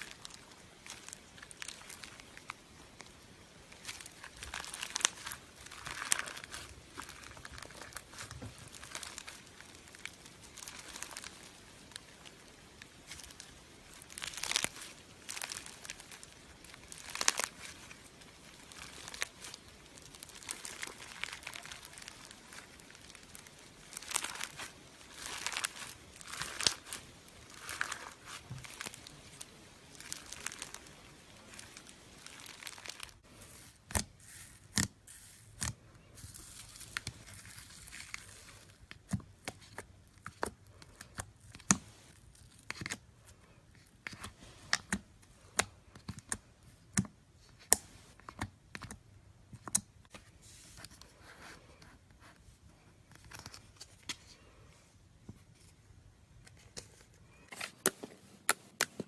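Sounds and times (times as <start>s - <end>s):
slime crinkling and crackling: 0.0s - 54.7s.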